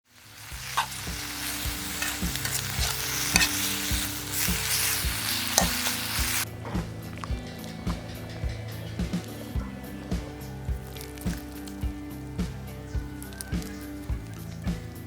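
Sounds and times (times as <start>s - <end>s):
food sizzling in a pan: 0.1s - 6.5s, 9.8s - 15.0s
background music with beat: 0.3s - 15.0s
stirring scrapes in a pan: 0.4s - 6.4s.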